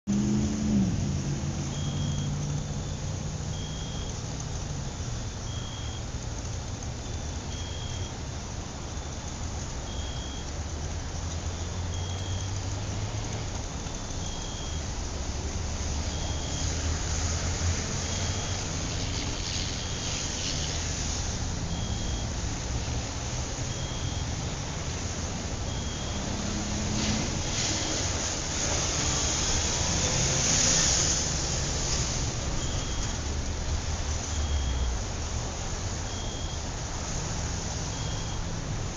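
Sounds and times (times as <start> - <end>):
vehicle passing by: 0.1 - 4.7, 14.6 - 36.1, 36.8 - 38.9
low rumble of city traffic: 0.1 - 38.9.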